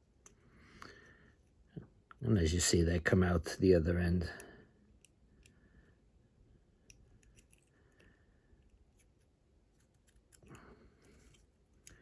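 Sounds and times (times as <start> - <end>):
soft rustle: 7.2 - 12.0
small clicks of wires: 9.8 - 12.0.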